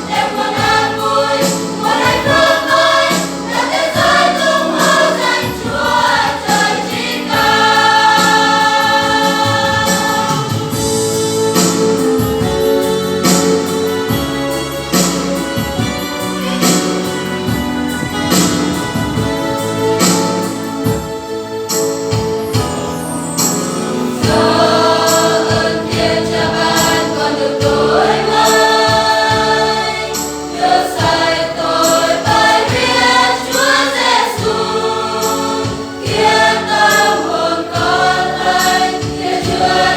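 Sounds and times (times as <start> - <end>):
choir singing a hymn: 0.0 - 14.3, 23.0 - 39.9
instrumental backing with beat: 0.0 - 39.9.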